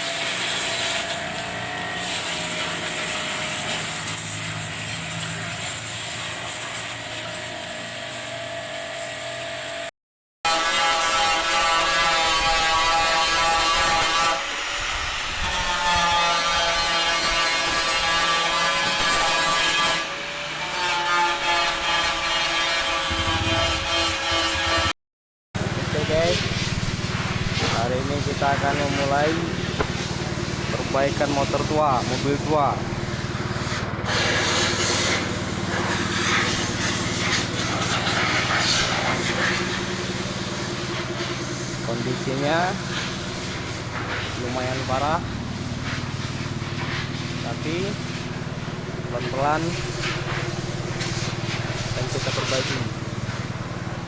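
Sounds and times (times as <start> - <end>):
hiss and rubbing noise: 0.0 - 9.9, 33.6 - 40.2
motor running with low pulse: 0.0 - 9.9, 23.0 - 24.9, 25.6 - 54.0
power tool whining: 0.0 - 9.9, 21.3 - 24.9.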